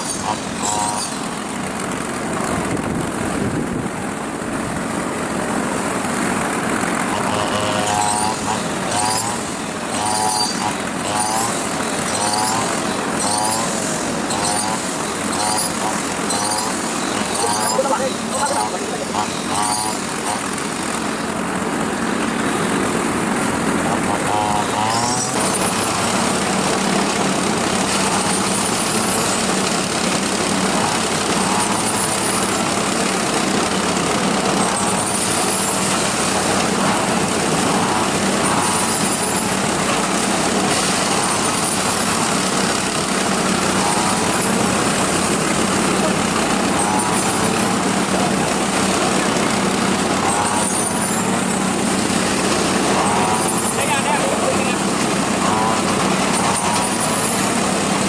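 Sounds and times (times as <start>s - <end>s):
small engine humming: 0.0s - 58.0s.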